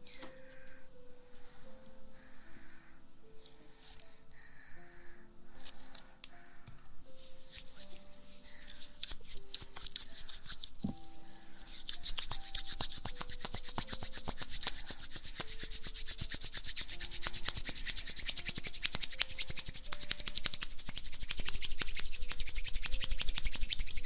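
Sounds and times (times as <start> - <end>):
scratchy rubbing on microphone: 11.5 - 19.8.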